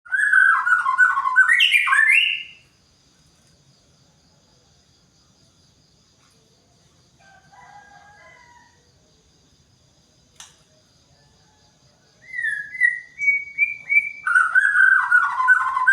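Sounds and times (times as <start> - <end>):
bird whistled song: 0.1 - 2.6, 12.2 - 15.9
single click: 10.4 - 10.7.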